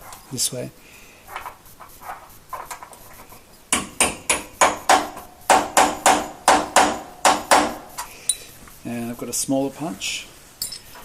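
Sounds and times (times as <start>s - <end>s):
hammer striking metal punch: 3.7s - 7.9s.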